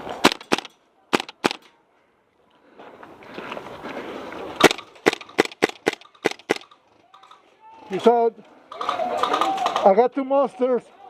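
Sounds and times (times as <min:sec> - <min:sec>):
airsoft gun shots: 0:00.2 - 0:01.7, 0:04.6 - 0:06.8.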